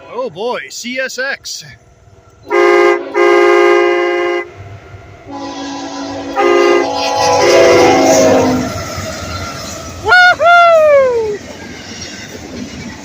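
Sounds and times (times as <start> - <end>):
train air horn blasts: 2.4 - 10.0.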